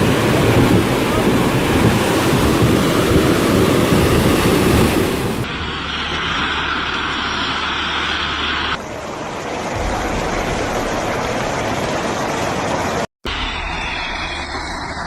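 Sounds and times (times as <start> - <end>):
wind buffeting microphone: 0.0 - 6.5
rushing floodwater: 0.0 - 15.0.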